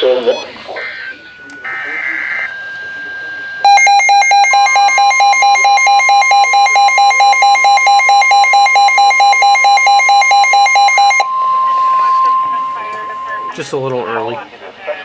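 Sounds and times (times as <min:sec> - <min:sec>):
alarm beeping rapidly: 0:00.0 - 0:14.3
steady high tone: 0:00.0 - 0:14.6.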